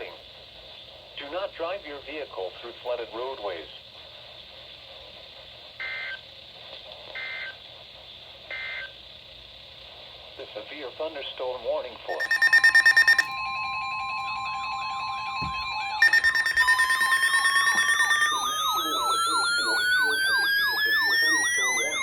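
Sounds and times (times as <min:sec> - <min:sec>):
buzzy digital data bursts: 0:12.1 - 0:22.0
electronic siren yelping: 0:12.1 - 0:22.0
siren tone gliding upward: 0:12.1 - 0:22.0
steady single-pitch alert tone: 0:12.1 - 0:22.0.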